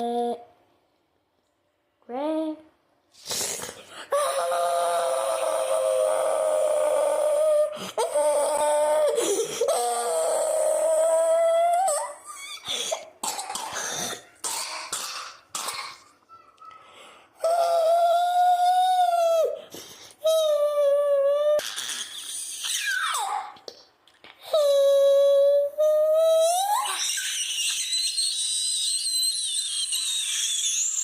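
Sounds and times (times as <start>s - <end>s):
person coughing: 13.0s - 16.2s.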